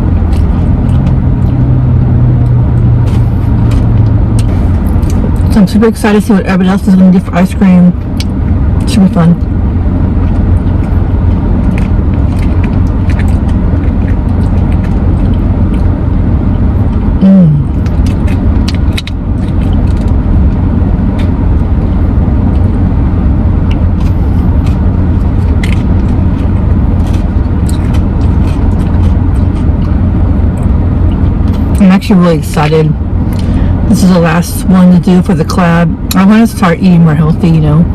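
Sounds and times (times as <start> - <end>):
car engine rumble inside car: 0.0 - 37.9
person humming: 17.2 - 17.8.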